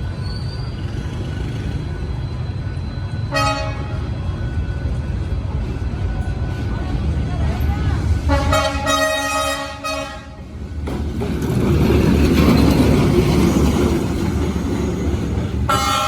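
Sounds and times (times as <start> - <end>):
running train: 0.0 - 16.0
shrill locomotive horn: 3.1 - 4.2, 8.3 - 10.5, 15.7 - 16.0.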